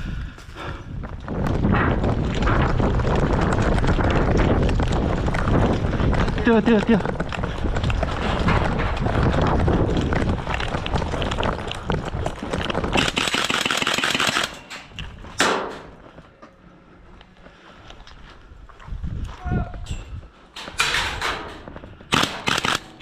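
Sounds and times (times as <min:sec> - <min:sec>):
running footsteps: 0:00.0 - 0:23.0
airsoft guns firing in bursts: 0:12.9 - 0:14.7, 0:22.1 - 0:23.0.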